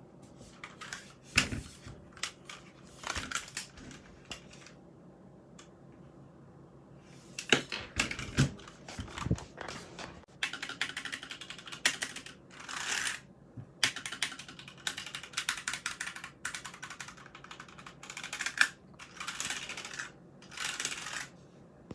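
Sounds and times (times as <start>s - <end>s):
mechanical keyboard typing: 2.2s - 3.8s, 10.4s - 13.2s, 13.8s - 21.3s.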